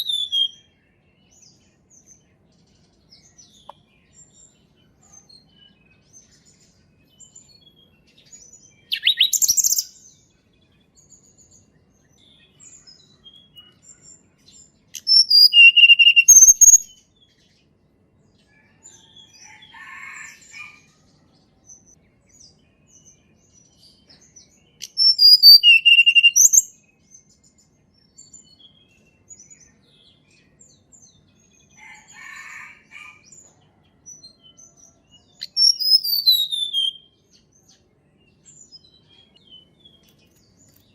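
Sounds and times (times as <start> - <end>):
bird whistling song: 0.0 - 0.8, 8.6 - 10.1, 14.9 - 17.0, 24.8 - 26.9, 35.4 - 37.2
faint bird calls and chirps: 0.0 - 40.9.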